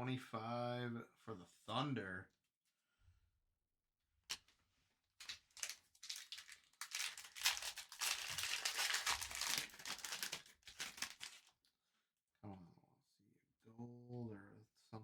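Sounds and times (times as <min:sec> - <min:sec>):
wrapper tearing and crinkling: 0:05.2 - 0:11.5.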